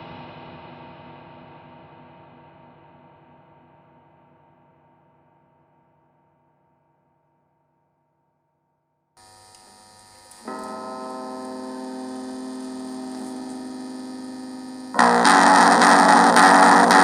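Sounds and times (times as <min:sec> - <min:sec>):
faint hiss: 0:09.2 - 0:17.0
sustained drone of held tones: 0:09.2 - 0:17.0.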